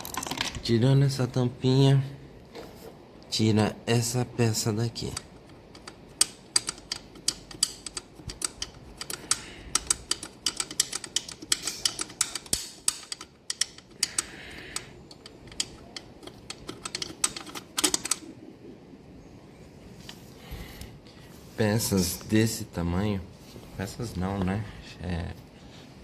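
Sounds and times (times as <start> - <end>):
wrench clicking on bolts: 5.0 - 18.2.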